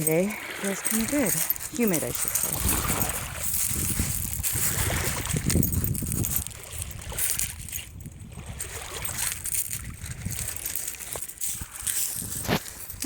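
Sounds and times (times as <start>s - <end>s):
seawater sloshing and lapping: 0.0s - 13.0s.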